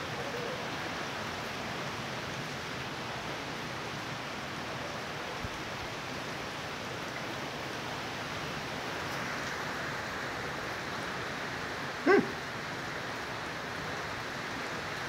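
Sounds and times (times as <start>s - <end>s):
heavy rain: 0.0s - 15.0s
loud pitched cry: 12.0s - 12.4s.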